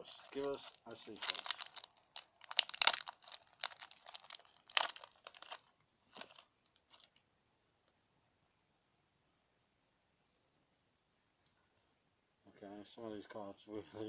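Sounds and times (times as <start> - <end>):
foil wrapper tearing and crinkling: 0.0 - 7.2.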